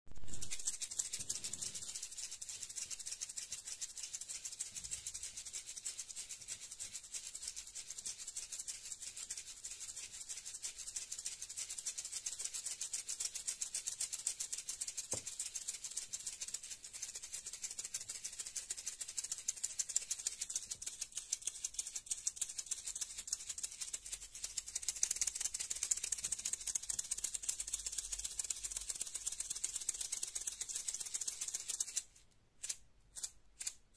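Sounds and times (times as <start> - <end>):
maracas rattling: 0.2 - 33.9.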